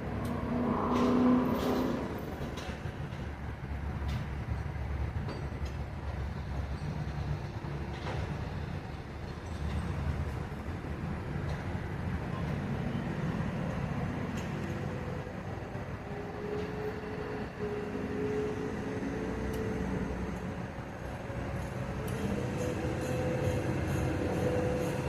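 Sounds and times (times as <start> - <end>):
whine shifting in pitch: 0.0 - 2.2
heavy equipment engine rumbling: 0.0 - 25.0.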